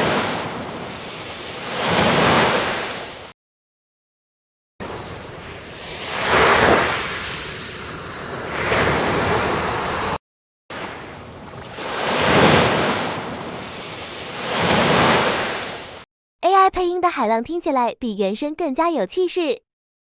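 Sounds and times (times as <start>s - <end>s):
ocean waves breaking: 0.0s - 3.3s, 4.8s - 16.0s.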